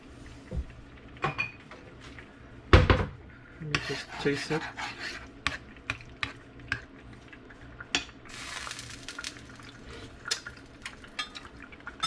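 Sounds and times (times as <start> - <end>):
utensils clinking against dishes: 11.1 - 11.5.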